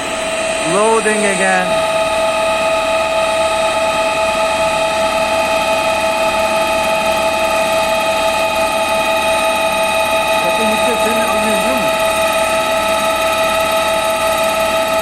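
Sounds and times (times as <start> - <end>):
machine noise: 0.0 - 15.0
high-pitched gear whine: 10.3 - 14.0.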